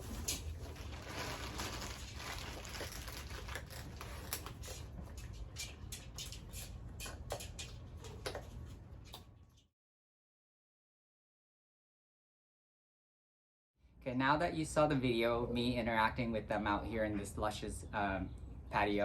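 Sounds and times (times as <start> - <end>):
parrots clicking and tapping food: 2.8 - 9.6.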